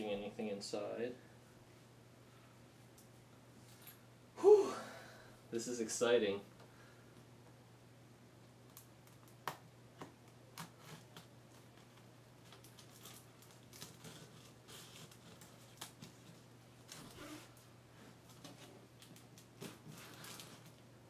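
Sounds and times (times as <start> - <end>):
low steady hum: 0.0 - 21.0
packaging clicks and rustles: 10.6 - 17.2, 18.3 - 20.8.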